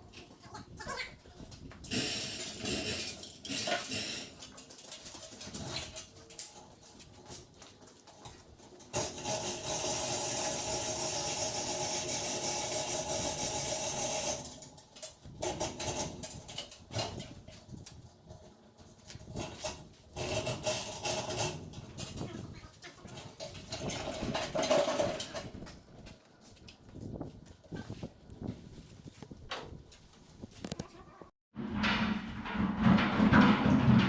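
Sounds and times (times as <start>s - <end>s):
metallic clanks and knocks: 31.6s - 34.0s.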